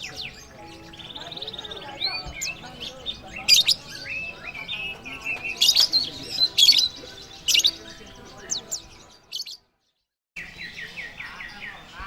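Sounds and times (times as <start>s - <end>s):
sharp bird chirps: 0.0s - 7.9s
songbirds singing: 0.0s - 12.0s.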